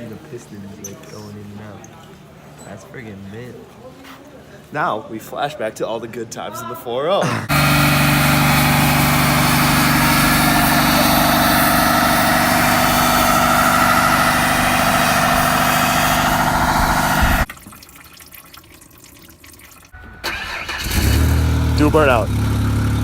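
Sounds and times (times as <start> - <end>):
engine running loud: 7.5 - 17.5, 20.3 - 23.0.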